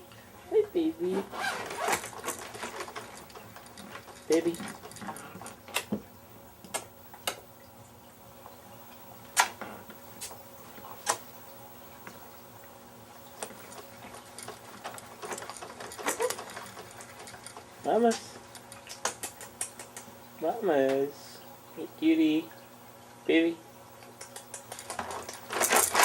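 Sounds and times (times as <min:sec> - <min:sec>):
baby's mouth clicks and smacks: 0:18.9 - 0:20.1, 0:24.2 - 0:24.8.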